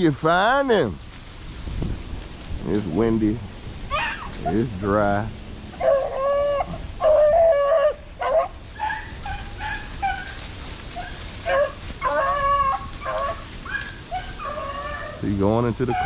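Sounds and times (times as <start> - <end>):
wind rumble on microphone: 0.7 - 16.0
hounds baying: 3.9 - 4.7, 5.7 - 16.0.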